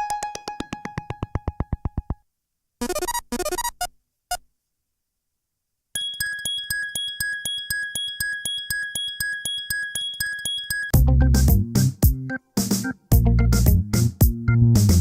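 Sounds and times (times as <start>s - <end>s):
phone ringtone blip: 6.0s - 11.0s
steady high tone: 6.0s - 11.0s
electronic ringtone beeps: 6.0s - 11.4s.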